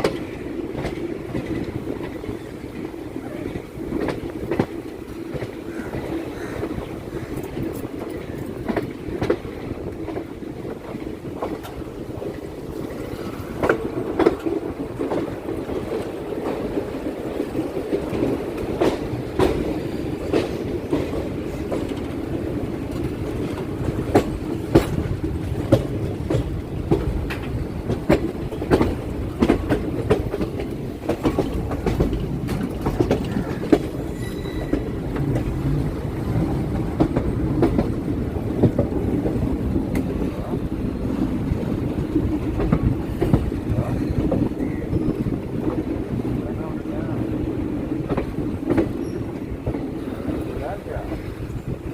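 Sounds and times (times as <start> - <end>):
train rumbling: 0.0 - 51.9
wheels clacking over rail joints: 0.0 - 51.9.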